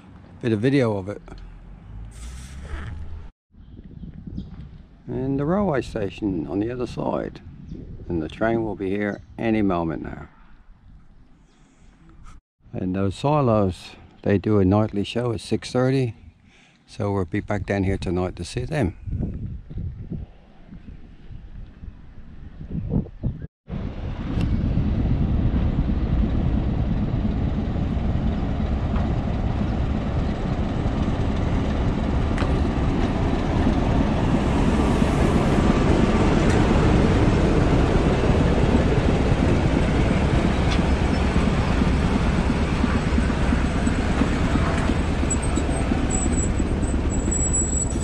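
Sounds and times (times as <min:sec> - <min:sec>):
train rumbling: 0:23.8 - 0:48.0
thin high squeal: 0:45.3 - 0:48.0.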